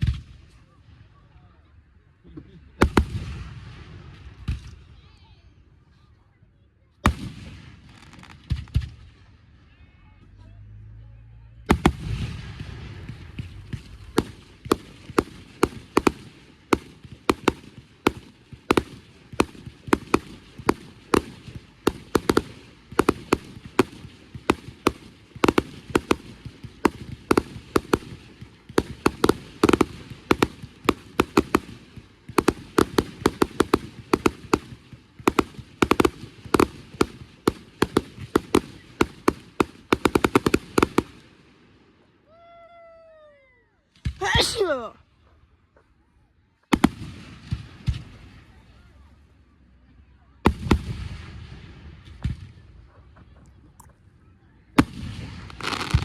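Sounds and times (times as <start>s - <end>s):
firecrackers cracking: 7.0s - 9.2s, 11.7s - 41.8s, 54.8s - 56.0s.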